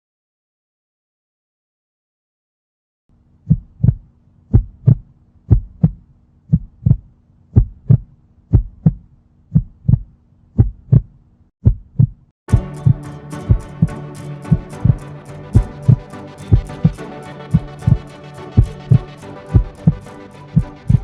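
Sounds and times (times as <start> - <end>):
heartbeat thumps: 3.5 - 12.6, 15.6 - 16.7.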